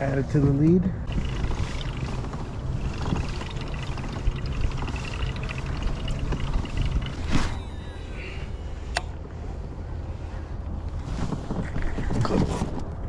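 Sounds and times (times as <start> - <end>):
water noise: 1.0 - 8.6
boat motor humming: 1.0 - 9.7
faint rapid ticking: 1.1 - 7.3.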